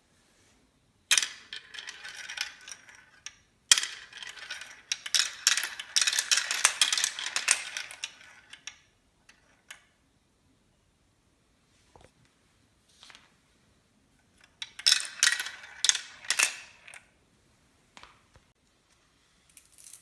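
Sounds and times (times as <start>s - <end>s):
marbles clicking on a marble run: 1.1s - 9.9s, 14.5s - 17.0s.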